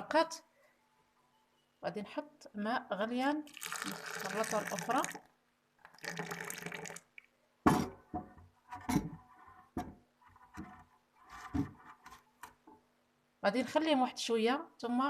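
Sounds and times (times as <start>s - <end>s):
water pouring into a glass: 3.5s - 7.3s.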